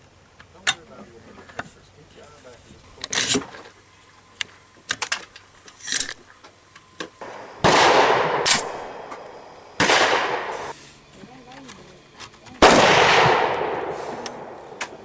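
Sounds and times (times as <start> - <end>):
loud sharp impacts: 7.2 - 10.8.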